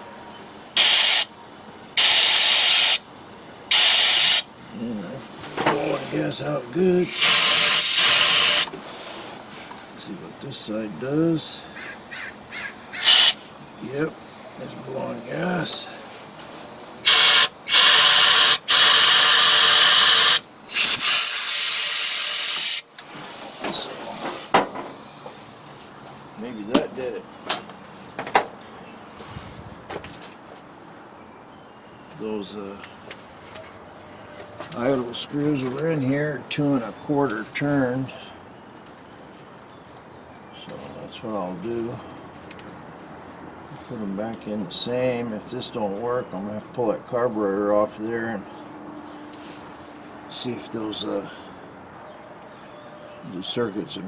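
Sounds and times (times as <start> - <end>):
compressed air hissing: 0.4 - 5.4, 6.0 - 23.4.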